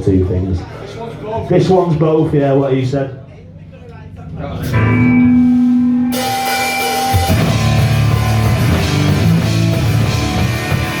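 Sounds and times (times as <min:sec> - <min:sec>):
drums and cymbals crashing: 0:04.6 - 0:11.0
punk rock band playing: 0:04.6 - 0:11.0
electric guitar chord ringing: 0:04.7 - 0:11.0.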